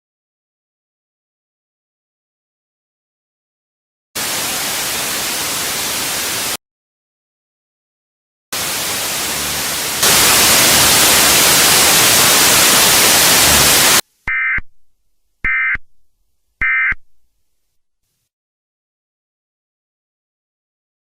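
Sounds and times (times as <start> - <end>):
television static hiss: 4.2 - 6.6, 8.6 - 14.0
emergency alert data tones: 13.1 - 14.7, 15.5 - 15.8, 16.6 - 17.0.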